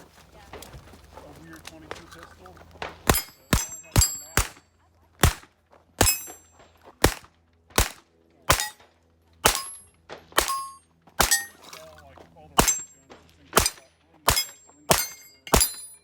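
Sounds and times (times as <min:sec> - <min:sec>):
bullets clanging on steel plates: 0:03.0 - 0:04.6, 0:06.0 - 0:06.5, 0:08.5 - 0:08.8, 0:09.4 - 0:11.9, 0:12.6 - 0:13.0, 0:13.6 - 0:16.0
pistol shots: 0:03.0 - 0:04.6, 0:05.2 - 0:06.4, 0:07.0 - 0:08.8, 0:09.4 - 0:11.8, 0:12.6 - 0:13.0, 0:13.6 - 0:16.0.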